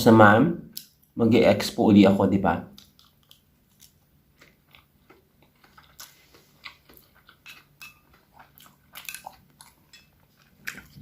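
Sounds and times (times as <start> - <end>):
mouth clicks and smacks: 2.7 - 11.0
person chewing and eating: 2.8 - 11.0.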